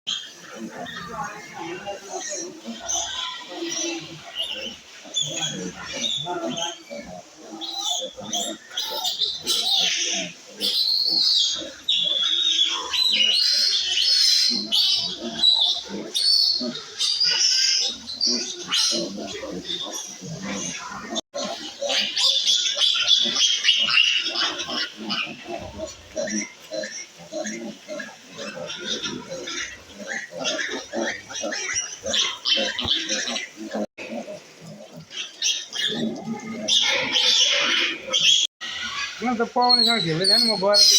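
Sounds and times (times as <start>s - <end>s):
piglet squealing: 0.1s - 33.9s, 34.8s - 40.9s
piglet grunting: 0.4s - 39.4s.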